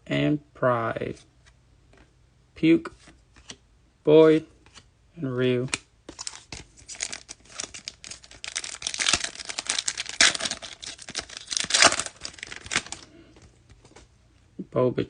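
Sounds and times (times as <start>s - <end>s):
foil wrapper tearing and crinkling: 6.2s - 13.1s.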